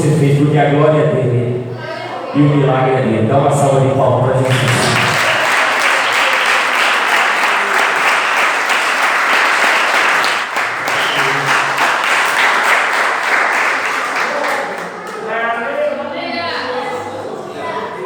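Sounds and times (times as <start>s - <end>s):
crowd applauding: 4.4s - 15.3s.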